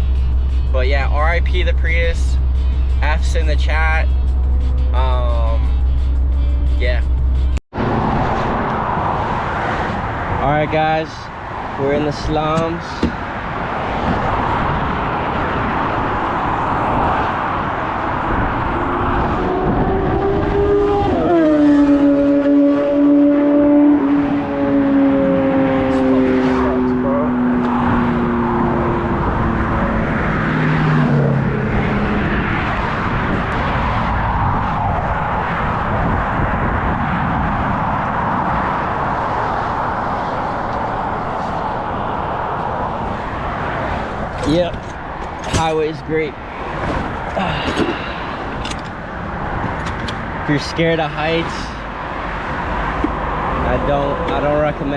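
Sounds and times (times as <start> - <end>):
road and wind noise: 0.0 - 54.9.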